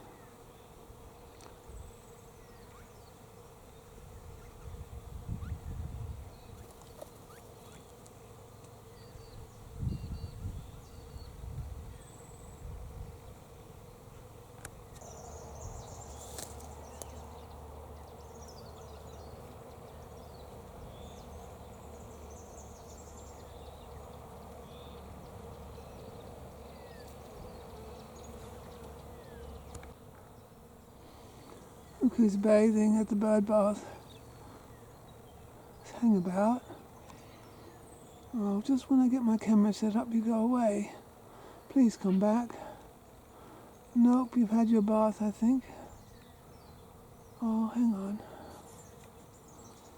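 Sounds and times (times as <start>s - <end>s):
steady buzzing hum: 0.0s - 49.9s
wind rumble on microphone: 4.1s - 6.6s, 9.7s - 13.2s.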